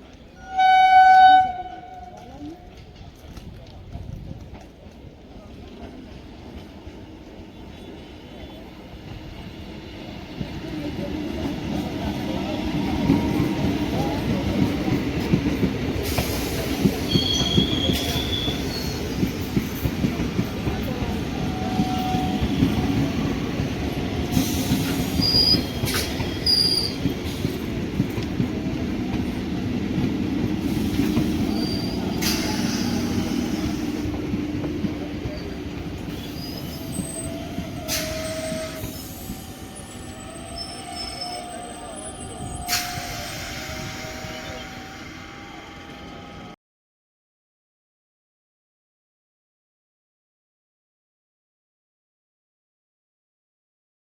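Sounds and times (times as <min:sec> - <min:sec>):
train wheels rumbling on rails: 0:00.0 - 0:46.6
wheel squeals: 0:17.0 - 0:19.2, 0:24.4 - 0:27.5, 0:31.0 - 0:33.0, 0:35.3 - 0:44.8.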